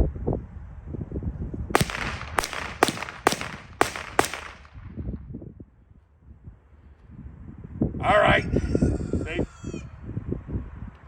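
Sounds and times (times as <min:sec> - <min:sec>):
pistol shots with echo: 0:01.8 - 0:05.1.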